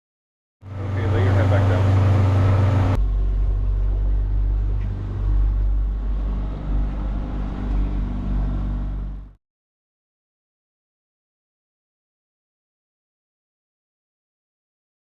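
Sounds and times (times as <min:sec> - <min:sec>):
vehicle engine rumble from inside: 0:00.6 - 0:09.4.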